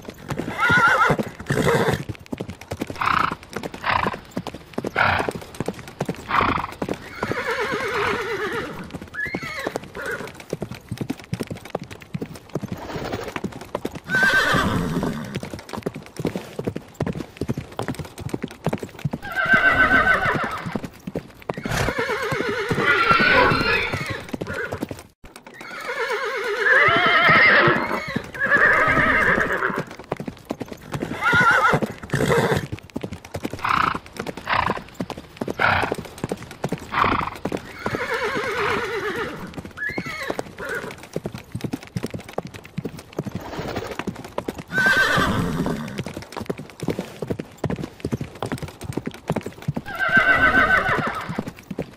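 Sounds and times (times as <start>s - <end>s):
horses neighing: 0.0s - 2.2s, 2.8s - 10.6s, 12.5s - 15.5s, 19.1s - 32.8s, 33.4s - 41.2s, 43.3s - 46.2s, 49.8s - 51.5s
hooves clopping: 0.0s - 51.9s.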